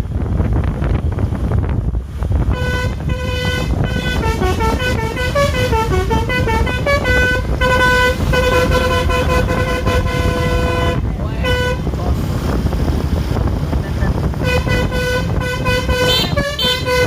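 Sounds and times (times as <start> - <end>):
low traffic rumble: 0.0 - 17.0
musical bus horn playing tune: 2.5 - 12.0, 14.4 - 17.0.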